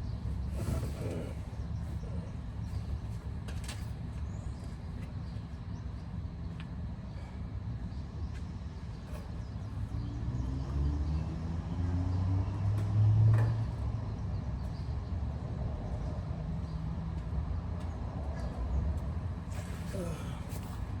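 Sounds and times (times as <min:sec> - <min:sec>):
low background hum: 0:00.0 - 0:10.2, 0:13.6 - 0:21.0
vehicle engine rumble passing: 0:09.4 - 0:20.2.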